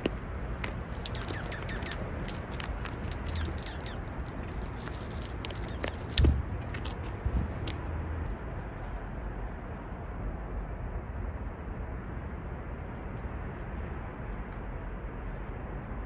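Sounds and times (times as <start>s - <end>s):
birds chipping: 0.0s - 9.0s
loud thump: 6.2s - 6.7s.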